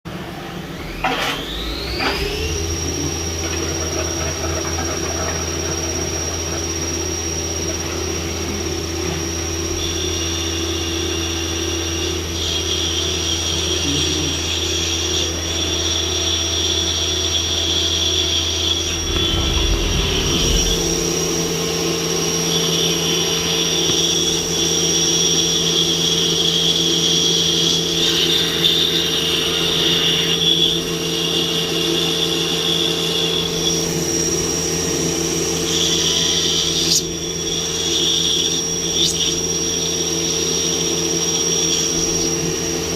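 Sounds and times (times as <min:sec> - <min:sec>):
cnc spindle whine: 0:00.1 - 0:42.9
low machine hum: 0:18.6 - 0:25.7.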